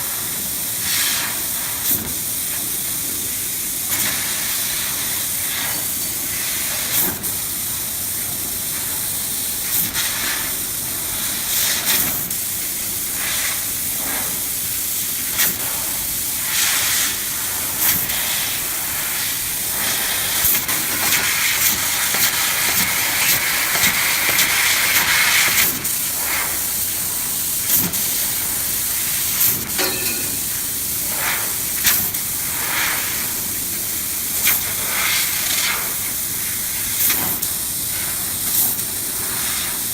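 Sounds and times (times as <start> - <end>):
laser cutter gas jet hissing: 0.0 - 39.9.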